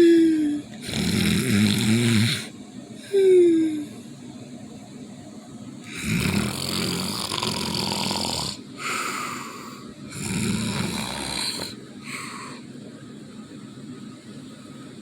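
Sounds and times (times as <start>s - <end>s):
rattling snores: 0.8s - 2.5s, 5.9s - 8.6s, 10.1s - 11.8s.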